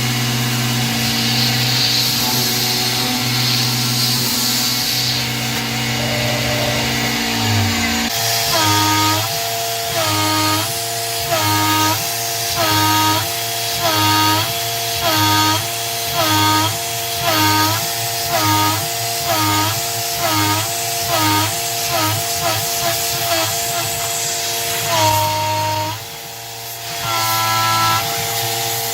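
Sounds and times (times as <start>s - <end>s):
whine rising and falling: 0.0s - 12.0s
milling machine cutting: 0.0s - 28.9s.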